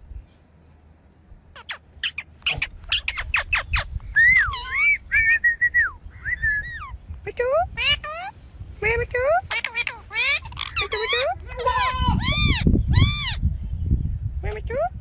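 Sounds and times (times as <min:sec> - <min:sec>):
parakeet chirping: 0:01.6 - 0:05.4, 0:06.4 - 0:07.0, 0:07.8 - 0:08.4, 0:09.4 - 0:13.4
parakeet whistled calls: 0:01.6 - 0:07.0, 0:09.5 - 0:13.4.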